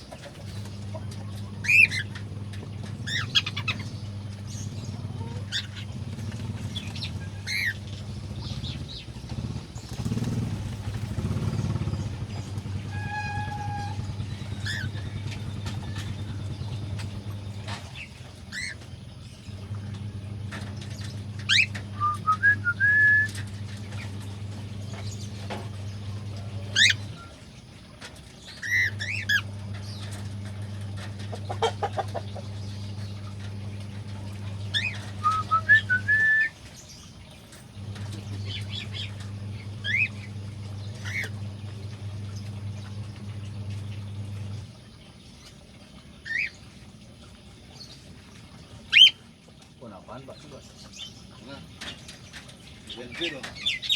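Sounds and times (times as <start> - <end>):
cockatiels chirping and whistling: 1.6 - 2.2, 3.1 - 3.8, 6.9 - 7.8, 14.6 - 15.0, 18.5 - 18.8, 21.4 - 23.4, 26.7 - 27.3, 28.6 - 29.5, 34.7 - 36.6, 39.8 - 40.2, 46.3 - 46.6, 48.9 - 49.2
low hum: 19.2 - 27.4.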